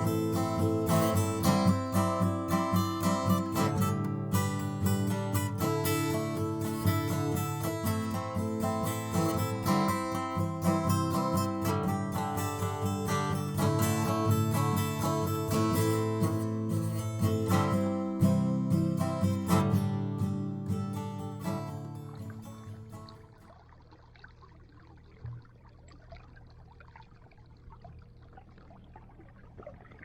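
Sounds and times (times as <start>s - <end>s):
strummed acoustic guitar: 0.0s - 23.5s.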